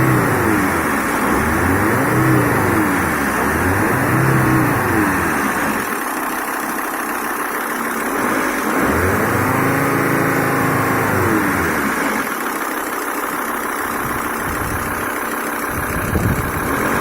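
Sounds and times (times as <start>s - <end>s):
diesel engine revving: 0.0s - 6.4s, 7.4s - 17.0s.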